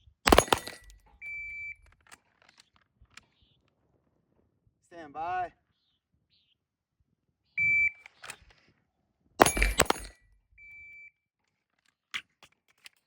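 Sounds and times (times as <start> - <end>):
pistol shots: 0.3 - 1.0, 9.4 - 10.1
shot timer beep: 7.6 - 8.0.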